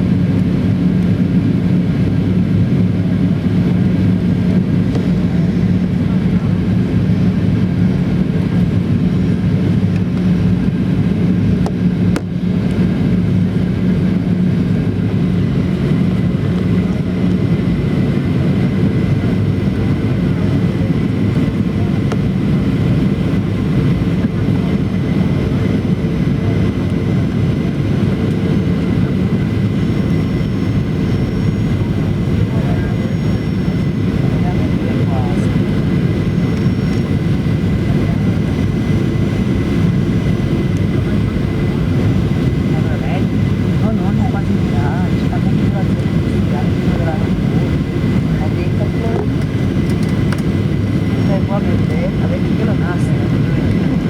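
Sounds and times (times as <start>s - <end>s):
jet airliner cabin noise: 0.0s - 54.0s
low hum: 0.0s - 54.0s.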